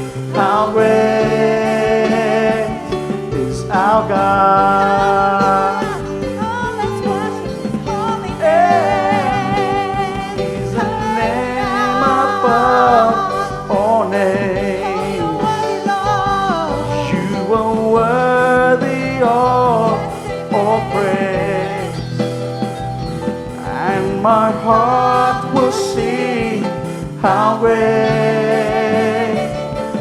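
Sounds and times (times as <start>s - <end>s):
band playing: 0.0s - 30.0s
person singing wavering vocals: 0.3s - 22.3s.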